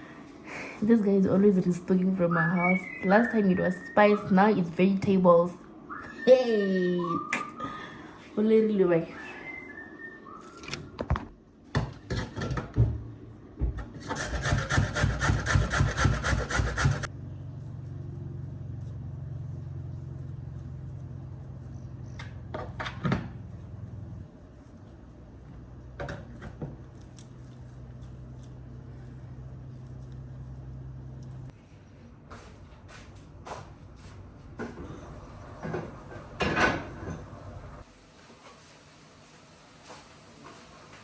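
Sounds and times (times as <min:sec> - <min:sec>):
steady low hum: 0:12.6 - 0:37.9
rasping scraping strokes: 0:14.0 - 0:17.1.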